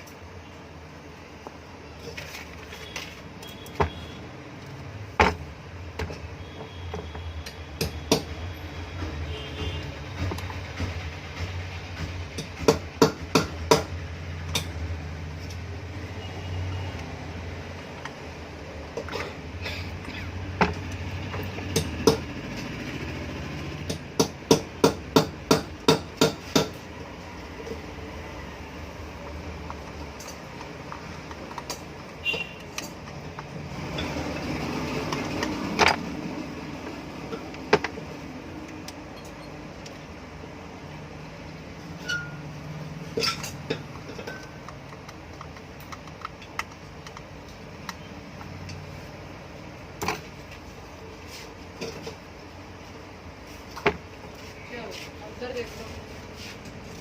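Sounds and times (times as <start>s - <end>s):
hammer tapping on metal parts: 5.2s - 15.7s, 18.9s - 22.5s, 23.6s - 26.9s, 29.2s - 36.2s, 36.8s - 40.1s, 41.9s - 48.8s.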